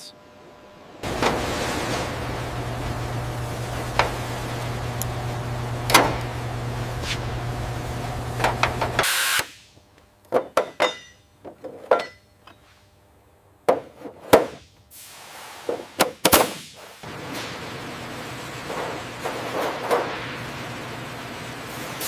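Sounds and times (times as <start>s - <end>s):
power tool running: 1.0s - 9.5s
hand tools knocking on metal: 10.3s - 12.3s.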